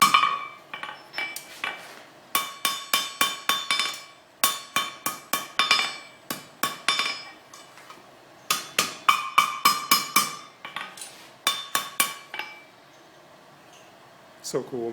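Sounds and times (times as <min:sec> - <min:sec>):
hammer striking iron on anvil: 0:00.0 - 0:07.7, 0:08.5 - 0:12.7.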